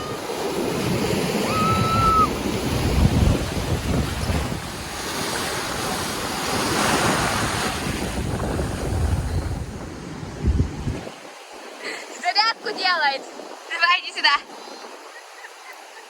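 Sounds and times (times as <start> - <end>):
wind buffeting microphone: 0.0 - 11.7
ocean surf washing in: 0.0 - 16.0.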